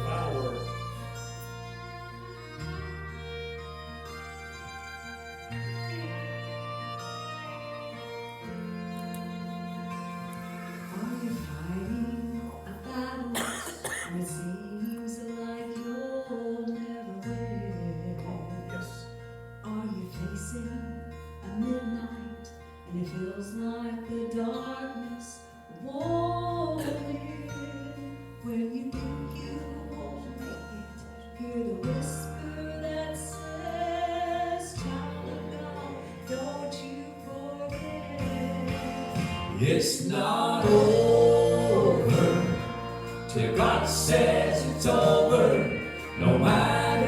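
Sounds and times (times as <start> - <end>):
sliding instrumental melody: 0.0 - 12.8, 37.8 - 47.0
held bass notes: 0.0 - 13.3, 26.1 - 47.0.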